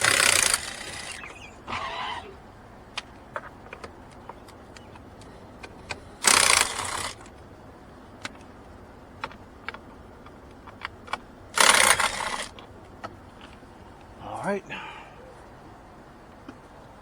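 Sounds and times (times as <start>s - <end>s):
power driver buzzing: 0.0s - 2.4s, 5.8s - 7.3s, 11.6s - 12.6s.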